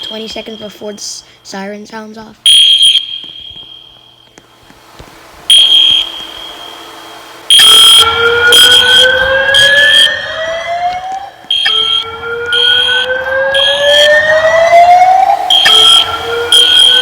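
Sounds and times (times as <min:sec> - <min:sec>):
high pulsing beep: 0:00.0 - 0:01.3, 0:05.5 - 0:10.7, 0:11.5 - 0:17.0
fire alarm whoop tone: 0:00.0 - 0:01.4, 0:02.4 - 0:04.6, 0:05.5 - 0:17.0.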